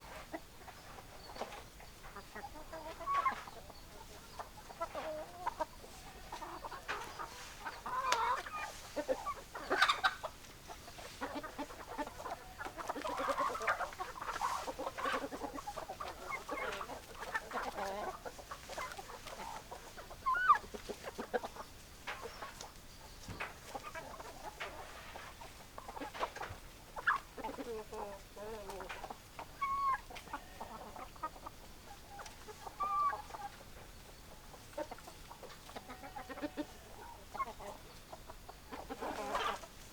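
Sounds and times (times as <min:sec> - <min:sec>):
hens clucking: 0:00.0 - 0:39.9.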